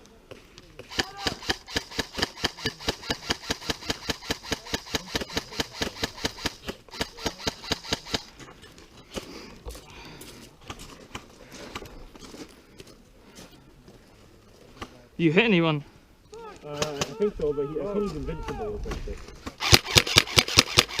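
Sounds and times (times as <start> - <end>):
airsoft gun firing rapid shots: 0.9 - 8.3, 19.6 - 21.0.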